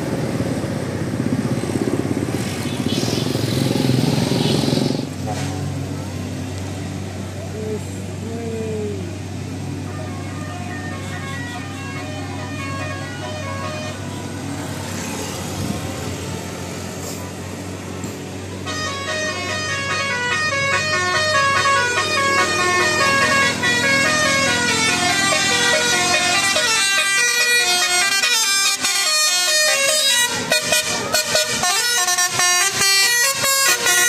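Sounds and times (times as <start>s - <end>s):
multi-tone horn melody: 9.8s - 14.8s, 18.6s - 34.0s.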